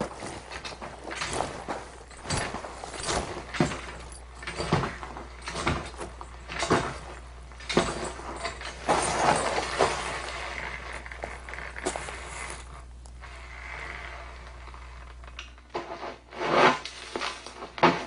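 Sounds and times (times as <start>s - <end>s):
scraping noise: 15.8s - 18.0s.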